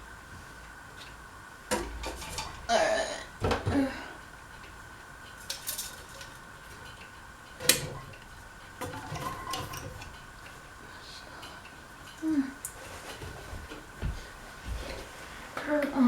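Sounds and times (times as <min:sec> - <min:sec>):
ceiling fan humming: 0:00.0 - 0:16.0
light clinks and clicks: 0:04.2 - 0:13.9.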